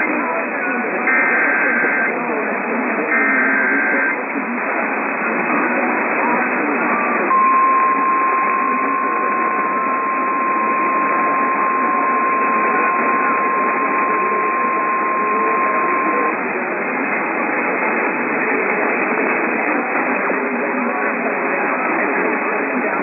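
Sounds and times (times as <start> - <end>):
radio static hiss: 0.0 - 23.0
high-pitched alarm tone: 1.1 - 2.1, 3.1 - 4.2, 7.3 - 16.4.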